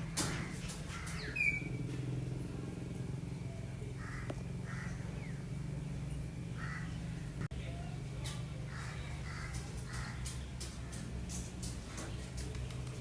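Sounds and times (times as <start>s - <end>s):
steady low hum: 0.0s - 13.0s
crow cawing: 0.2s - 1.5s, 4.0s - 5.3s, 6.5s - 7.2s, 8.6s - 11.0s.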